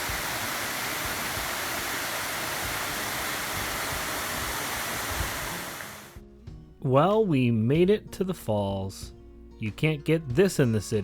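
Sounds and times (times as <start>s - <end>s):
waterfall rushing: 0.0s - 6.2s.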